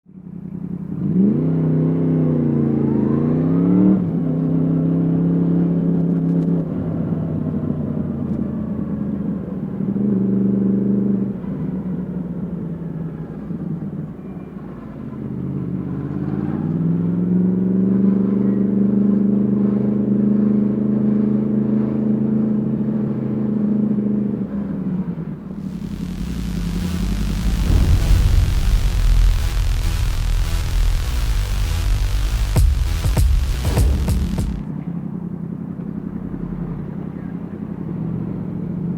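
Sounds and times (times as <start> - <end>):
motorcycle engine revving while riding: 0.9 - 5.9.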